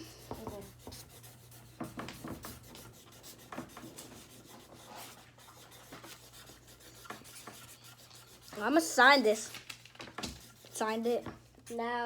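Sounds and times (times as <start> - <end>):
drawing tool scratching paper: 0.0 - 11.3.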